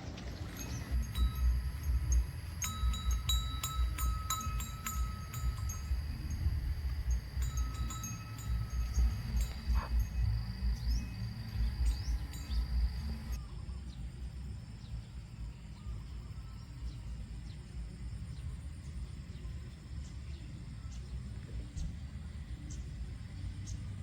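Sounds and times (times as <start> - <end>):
high falling bird chirps: 0.0 - 13.4
low rumble: 0.0 - 13.4
steady high tones: 0.5 - 13.4.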